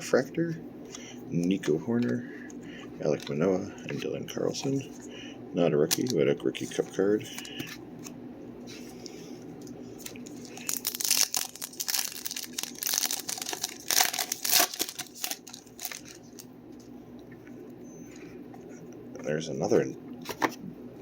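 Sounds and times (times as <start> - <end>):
wrapper being torn and crinkled: 10.0 - 16.5.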